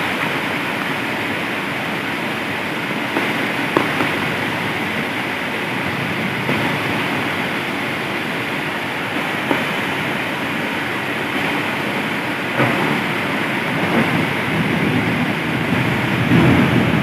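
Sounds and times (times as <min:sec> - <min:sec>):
heavy rain pouring: 0:00.0 - 0:17.0
sharp taps of raindrops: 0:03.0 - 0:05.7, 0:06.4 - 0:07.4, 0:09.1 - 0:10.3, 0:12.5 - 0:17.0.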